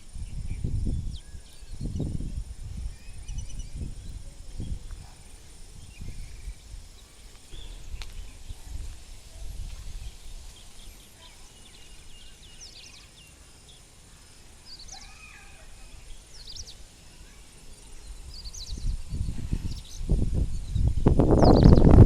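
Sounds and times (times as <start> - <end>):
low rumbling on microphone: 0.0 - 11.0, 18.1 - 22.0
birds chirping: 0.0 - 22.0.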